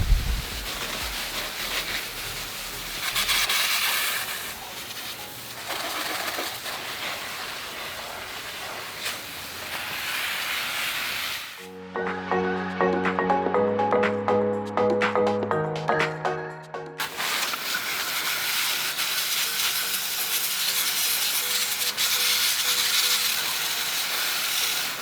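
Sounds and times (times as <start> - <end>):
music: 0.0 - 6.9, 11.6 - 25.0
hissing spray: 0.0 - 11.7, 17.0 - 25.0.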